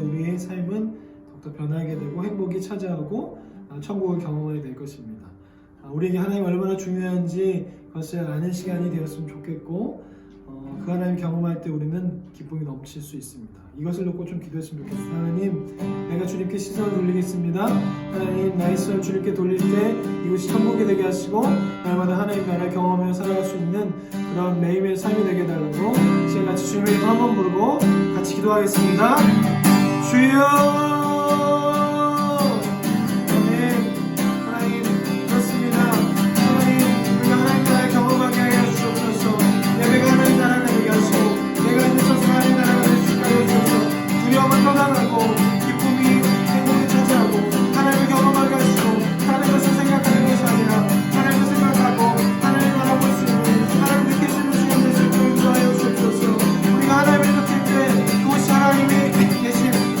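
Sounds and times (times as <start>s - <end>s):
acoustic guitar strumming: 0.0s - 4.3s, 4.9s - 12.3s, 14.4s - 60.0s
person singing: 16.1s - 60.0s.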